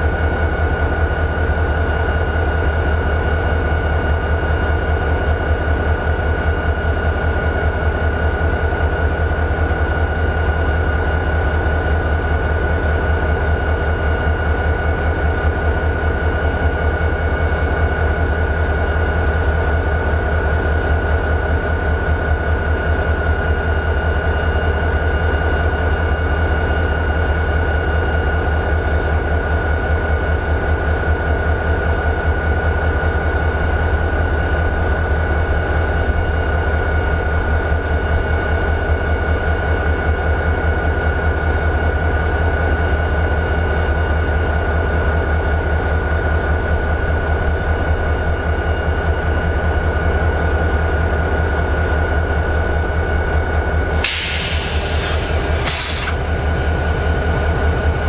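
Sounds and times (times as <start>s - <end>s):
diesel locomotive idling: 0.0s - 58.0s
burst of hissing: 54.0s - 56.2s.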